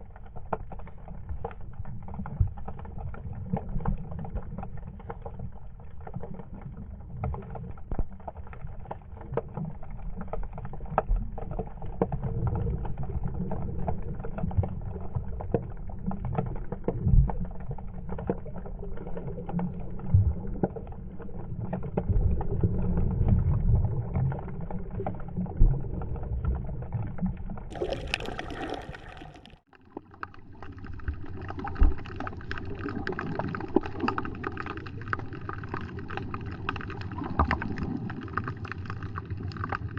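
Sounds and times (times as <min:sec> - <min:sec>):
light thin water noise: 0:00.0 - 0:39.9
water sloshing around kayak: 0:27.6 - 0:38.7
hissing water splash: 0:27.7 - 0:29.6.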